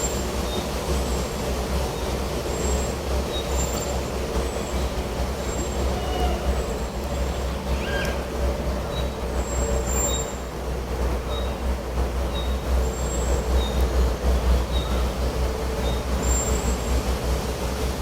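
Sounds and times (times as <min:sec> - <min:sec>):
birds chirping: 0:01.9 - 0:10.5, 0:11.2 - 0:16.8.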